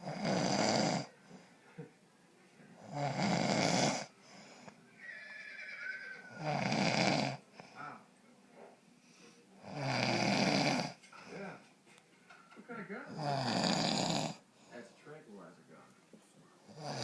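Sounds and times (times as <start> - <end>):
man snoring: 0.0 - 1.1, 2.8 - 4.1, 6.3 - 7.4, 9.6 - 11.0, 13.1 - 14.4, 16.7 - 17.0
quiet breathing: 0.0 - 5.1, 6.4 - 12.0, 12.7 - 17.0.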